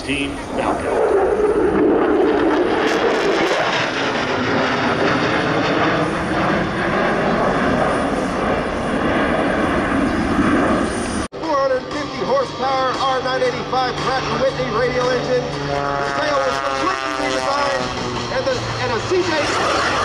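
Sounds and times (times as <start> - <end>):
jet engine passing: 0.0 - 20.0
steady rushing noise: 11.9 - 20.0.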